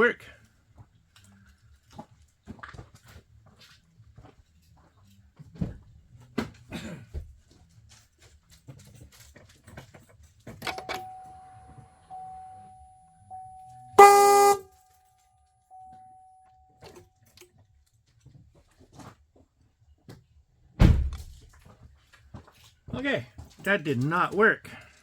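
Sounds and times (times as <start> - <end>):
faint steady whine: 10.7 - 14.6
truck horn blast: 14.0 - 14.7.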